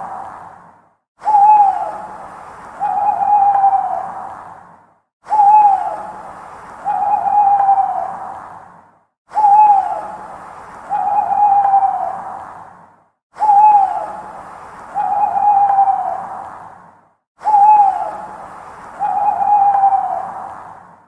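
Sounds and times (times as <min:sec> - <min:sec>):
owl hooting: 0:01.2 - 0:04.3, 0:05.3 - 0:06.2, 0:06.8 - 0:08.4, 0:09.4 - 0:12.4, 0:13.4 - 0:14.3, 0:14.9 - 0:16.4, 0:17.4 - 0:20.5.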